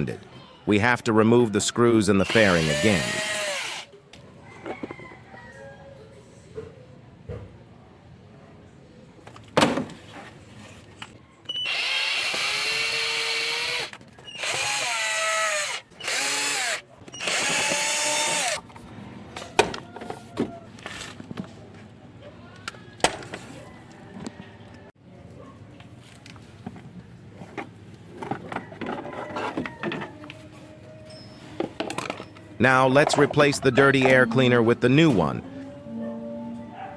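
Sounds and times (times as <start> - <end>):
cordless screwdriver motor: 2.3 - 3.9, 11.6 - 18.6.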